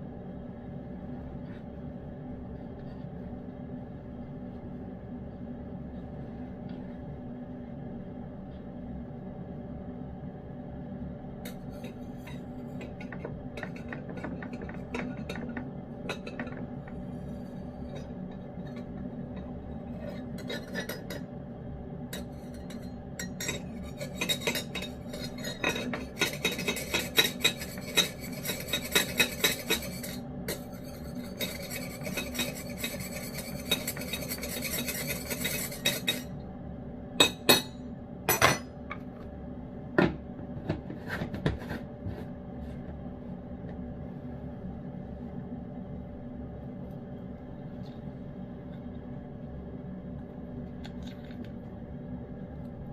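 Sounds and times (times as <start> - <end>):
steady low hum: 0.0 - 52.9.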